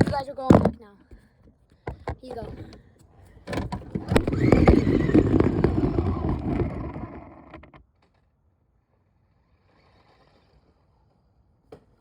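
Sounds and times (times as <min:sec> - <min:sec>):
wheels and chassis rattling: 0:01.9 - 0:08.2
toy car electric motor whining: 0:03.8 - 0:07.8, 0:09.3 - 0:11.3.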